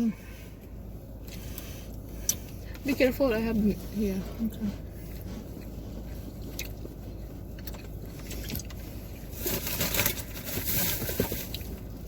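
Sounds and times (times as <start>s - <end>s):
car cabin hum: 0.0s - 12.0s
short rustle: 8.1s - 11.9s.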